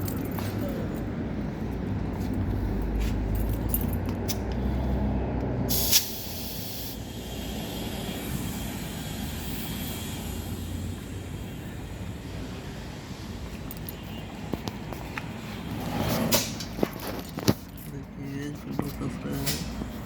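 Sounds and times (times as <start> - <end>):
compressed air blast hissing: 5.7 - 12.0
low mechanical rumble: 7.0 - 20.0.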